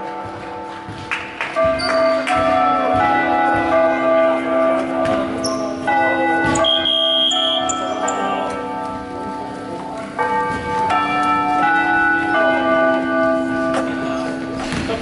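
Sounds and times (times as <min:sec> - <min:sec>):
bell-like music: 0:00.0 - 0:14.6
shoe squeaks on court: 0:01.8 - 0:02.3, 0:05.4 - 0:05.7.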